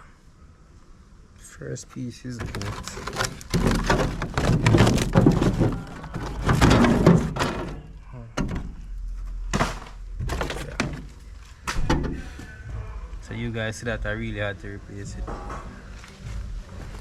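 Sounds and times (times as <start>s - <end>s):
knocks and thunks: 2.4s - 8.8s, 9.5s - 12.9s
crumbling clattering wood: 2.4s - 12.5s.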